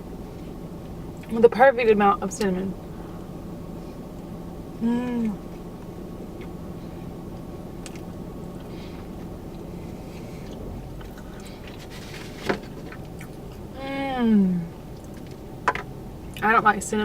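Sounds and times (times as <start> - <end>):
low background hum: 0.0 - 17.0
chewing soft food: 5.1 - 13.7, 14.9 - 15.5.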